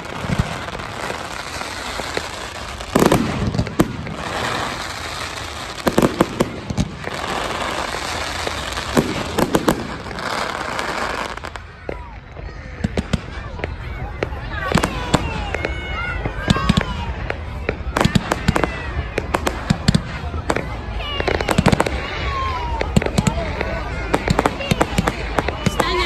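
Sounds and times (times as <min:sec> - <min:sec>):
fireworks bangs: 0:00.0 - 0:26.0
fireworks crackling hiss: 0:00.0 - 0:26.0.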